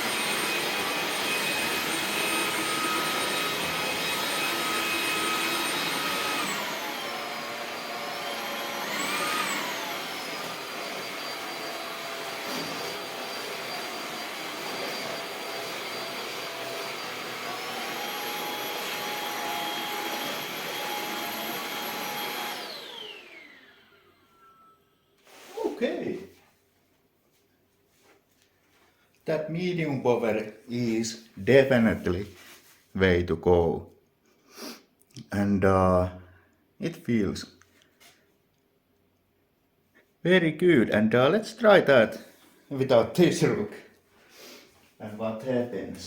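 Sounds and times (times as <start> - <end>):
stick vacuum running with high whine: 0.0 - 24.8.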